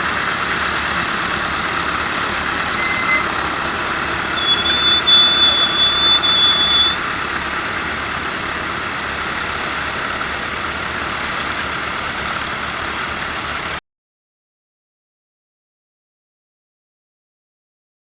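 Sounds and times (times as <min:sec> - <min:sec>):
tractor diesel engine running: 0:00.0 - 0:13.8
high steady whine: 0:00.9 - 0:07.0.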